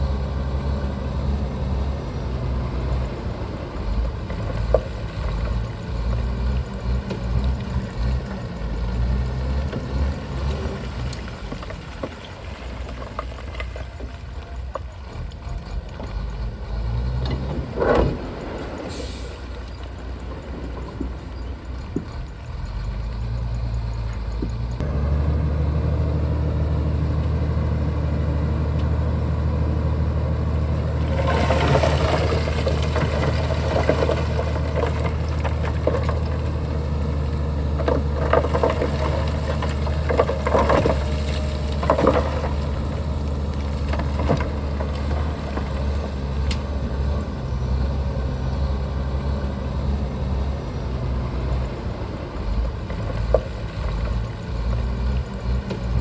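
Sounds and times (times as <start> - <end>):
bulldozer diesel engine: 0.0 - 56.0
rattling and scraping: 30.9 - 46.8.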